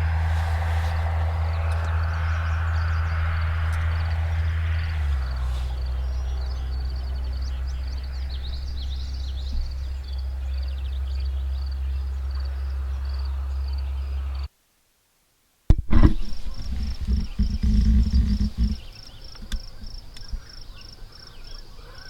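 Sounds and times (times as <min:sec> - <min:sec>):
high pulsing call: 0:00.0 - 0:11.4
rumbling noise: 0:00.0 - 0:13.5, 0:15.7 - 0:20.0
steady low hum: 0:00.0 - 0:14.4, 0:15.7 - 0:20.5
songbirds chirping: 0:00.0 - 0:14.5, 0:16.1 - 0:22.0.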